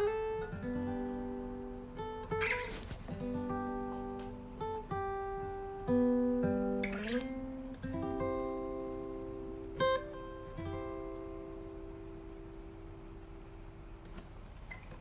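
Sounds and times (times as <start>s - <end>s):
slow acoustic guitar music: 0.0s - 15.0s.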